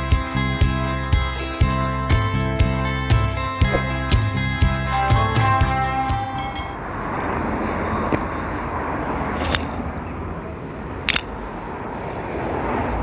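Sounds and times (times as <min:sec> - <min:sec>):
road traffic: 0:00.0 - 0:13.0.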